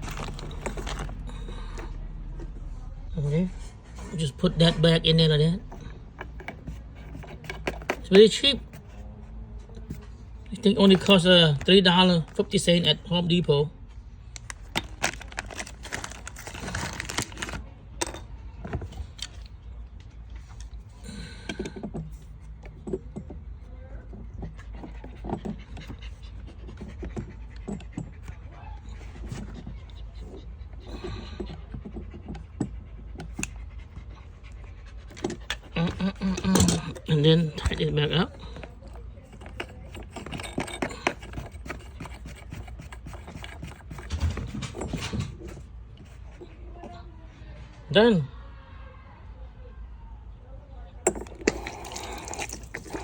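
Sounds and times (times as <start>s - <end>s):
small hard parts clicking: 35.1s - 45.6s, 51.0s - 53.0s.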